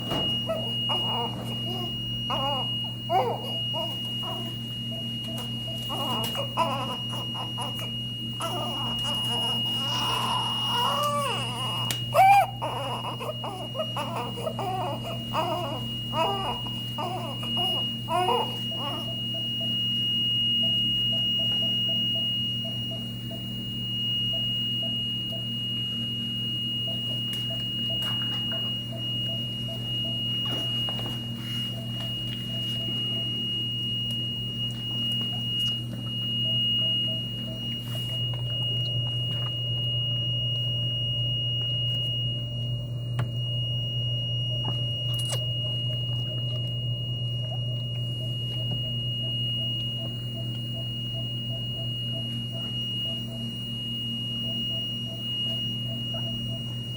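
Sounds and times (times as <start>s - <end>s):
low machine hum: 0.0s - 56.9s
steady high tone: 0.0s - 56.9s
infant squeaking: 0.5s - 4.5s, 5.9s - 19.1s.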